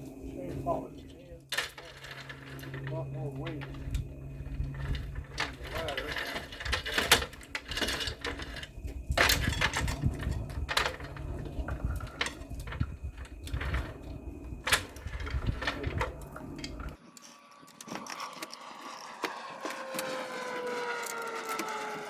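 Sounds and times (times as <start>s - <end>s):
knocks clicks and clanks of work: 1.5s - 17.0s
low rumble: 8.5s - 17.0s.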